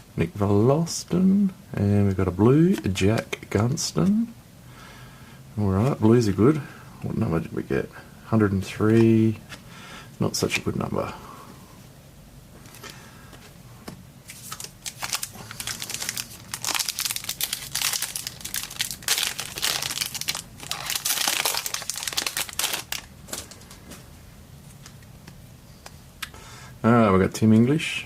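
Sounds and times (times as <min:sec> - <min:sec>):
foil wrapper tearing and crinkling: 0:14.5 - 0:23.1.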